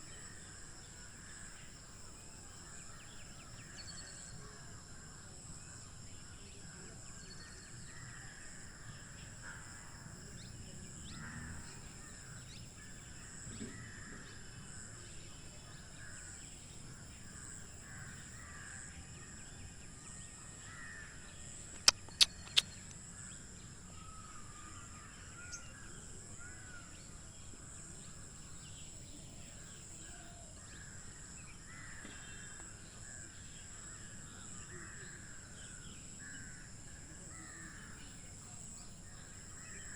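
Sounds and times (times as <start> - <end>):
birds calling: 21.7 - 22.9
sharp clicks: 21.7 - 23.0.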